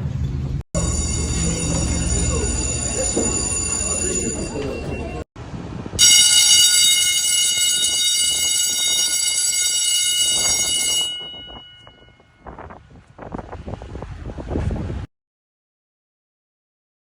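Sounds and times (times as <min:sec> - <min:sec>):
school bell ringing: 0:00.8 - 0:05.3, 0:06.0 - 0:12.7.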